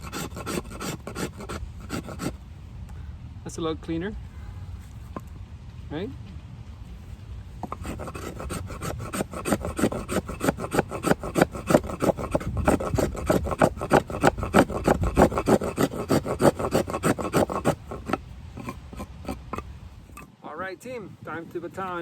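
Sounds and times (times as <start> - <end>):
knife blade scraping wood: 0.0 - 2.4, 7.6 - 20.3.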